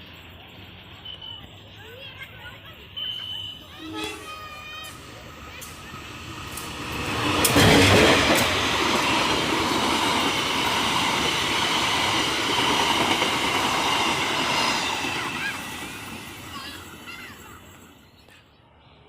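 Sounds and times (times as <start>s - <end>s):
train wheels rumbling on rails: 0.0s - 18.4s
sharp rail clacks: 4.0s - 15.5s.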